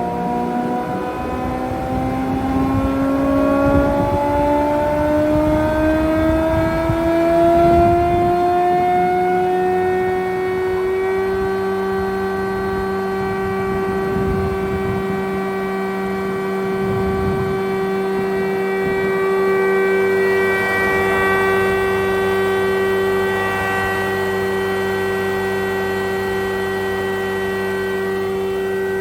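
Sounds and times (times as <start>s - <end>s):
thickness planer whining: 0.0s - 29.0s.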